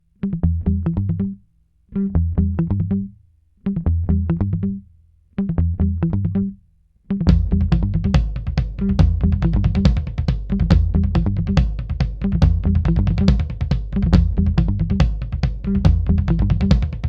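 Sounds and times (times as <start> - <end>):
plucked string riff with bass: 0.2 - 17.0
drums: 7.3 - 17.0.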